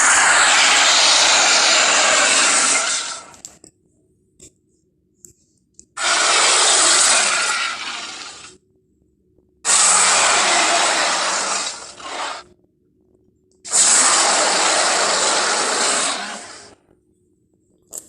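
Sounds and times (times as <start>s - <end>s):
monster roar: 0.0s - 3.3s, 6.0s - 8.4s, 9.7s - 12.4s, 13.7s - 16.7s.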